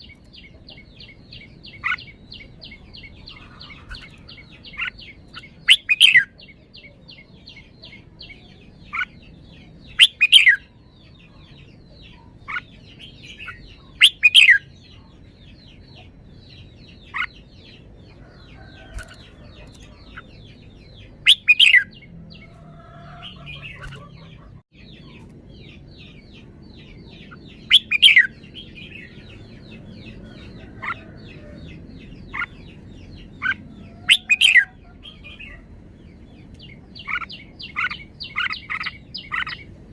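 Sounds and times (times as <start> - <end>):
bird singing sweeping phrases: 0.0 - 39.9.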